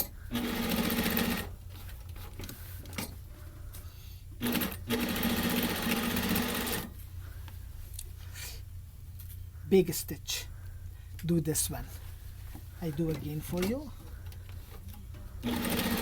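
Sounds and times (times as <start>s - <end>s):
sewing machine stitching: 0.0s - 1.5s, 4.4s - 6.9s, 15.4s - 16.0s.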